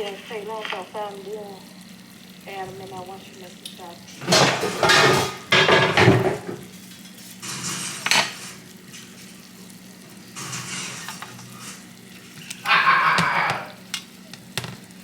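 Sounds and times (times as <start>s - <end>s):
frying sizzle: 0.0s - 15.0s
metal utensils clattering on pan: 4.2s - 6.6s, 7.4s - 8.6s, 10.4s - 11.8s.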